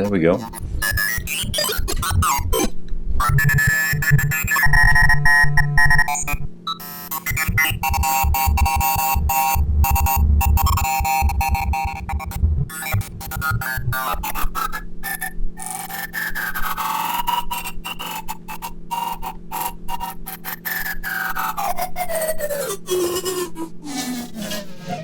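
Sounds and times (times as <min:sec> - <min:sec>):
glitchy electronic music: 0:00.0 - 0:15.2, 0:23.9 - 0:25.0.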